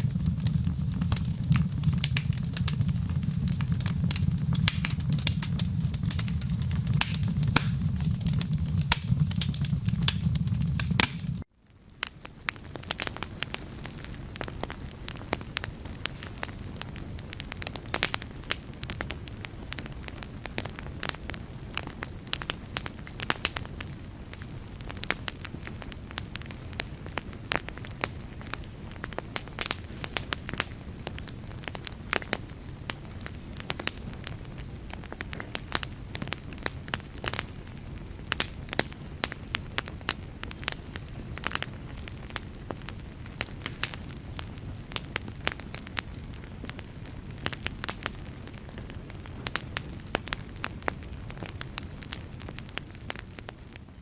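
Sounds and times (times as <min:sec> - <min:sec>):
low rumble: 0:00.0 - 0:11.4
fire crackling: 0:00.0 - 0:54.0.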